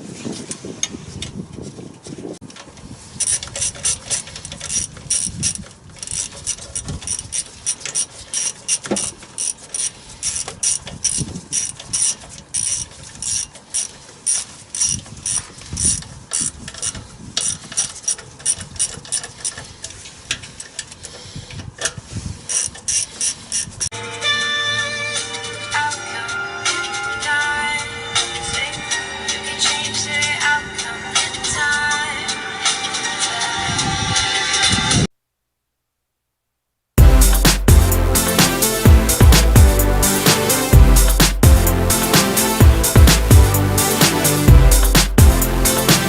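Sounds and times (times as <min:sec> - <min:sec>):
ratchet wrench clicking: 0:03.2 - 0:21.2.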